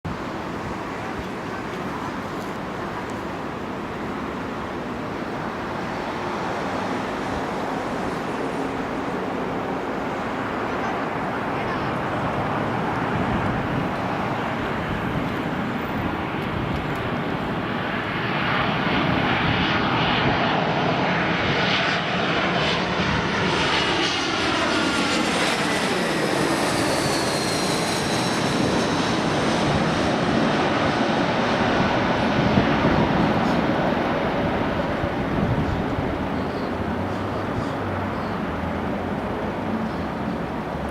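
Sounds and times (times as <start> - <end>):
jet engine whine falling in pitch: 0.1 - 40.7
jet engine rumble: 0.1 - 40.9.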